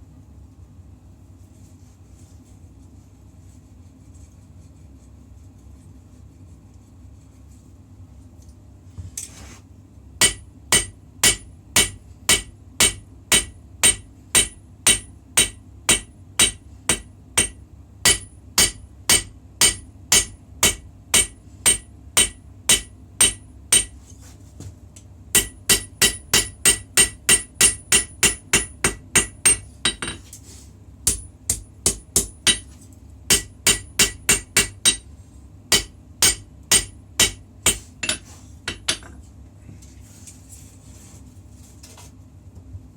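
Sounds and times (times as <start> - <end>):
hammer striking blade on anvil: 10.2 - 24.0, 25.4 - 30.2, 31.1 - 32.7, 33.3 - 35.1, 35.7 - 39.1.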